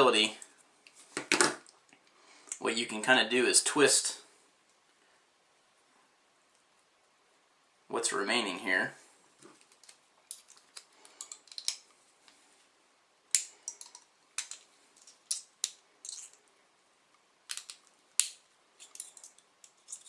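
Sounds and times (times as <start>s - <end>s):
pliers clicking and scraping wire: 17.5s - 20.0s.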